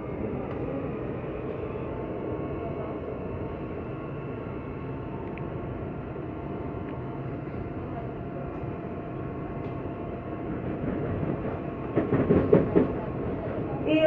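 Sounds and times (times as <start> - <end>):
train car rumble: 6.5 - 14.0.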